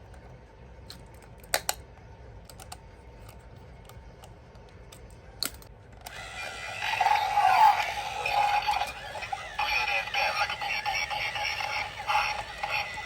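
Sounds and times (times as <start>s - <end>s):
electronic music with synthetic voice: 6.6s - 13.0s.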